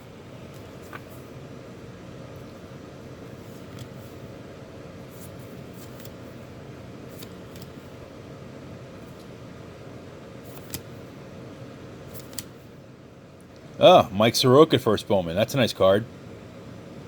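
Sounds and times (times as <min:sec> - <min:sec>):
steady room hum: 0:00.0 - 0:17.0
cards flicking and sliding: 0:00.5 - 0:01.3, 0:03.3 - 0:04.3, 0:05.0 - 0:06.4, 0:07.0 - 0:08.0, 0:09.0 - 0:09.4, 0:10.4 - 0:11.1, 0:12.0 - 0:12.7.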